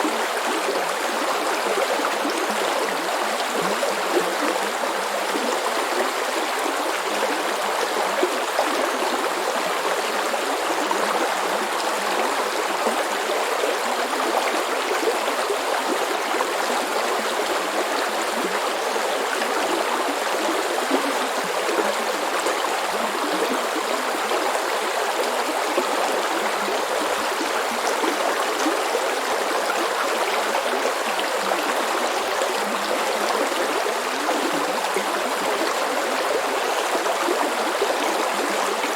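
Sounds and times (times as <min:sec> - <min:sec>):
brook babbling over stones: 0:00.0 - 0:38.9.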